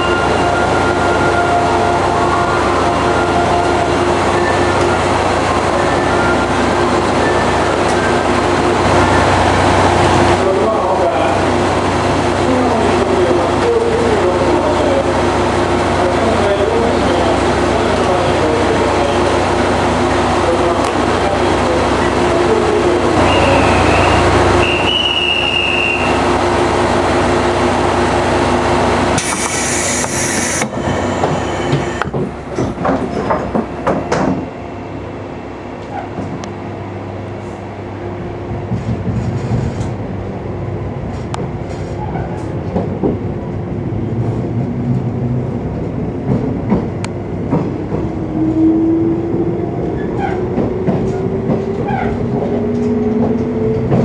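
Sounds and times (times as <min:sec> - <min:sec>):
train interior rumble and hum: 0:00.0 - 0:54.0
short hiss: 0:29.2 - 0:30.7
train motor whine rising: 0:29.2 - 0:32.1.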